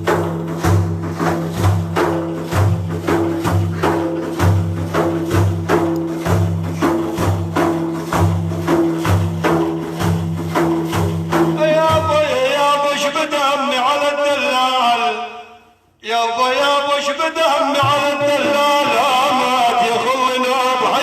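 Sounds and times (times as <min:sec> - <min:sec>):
percussion beat with tambourine: 0:00.0 - 0:12.4
man singing: 0:11.5 - 0:21.0.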